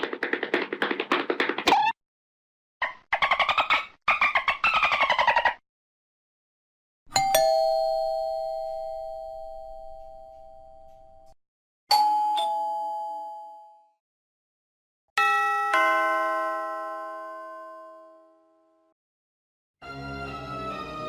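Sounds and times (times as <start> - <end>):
doorbell two-note chime: 7.2 - 13.9.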